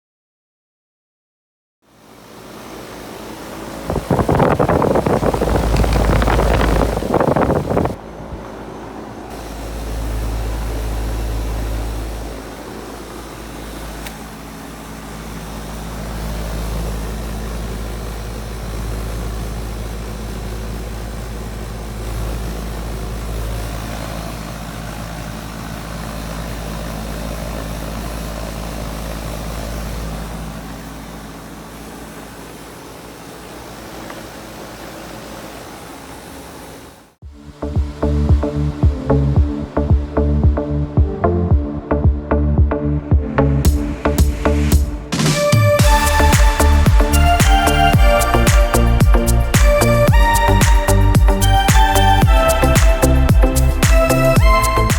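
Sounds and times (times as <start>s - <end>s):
air conditioner compressor humming: 1.9s - 54.9s
condenser fan running: 1.9s - 54.9s
low rumble: 3.9s - 8.4s, 37.2s - 54.9s.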